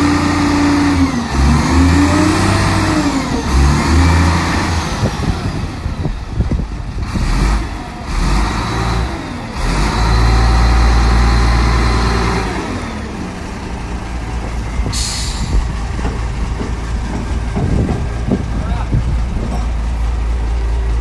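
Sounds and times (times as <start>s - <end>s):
diesel engine revving: 0.0s - 21.0s
air hiss: 14.9s - 15.8s.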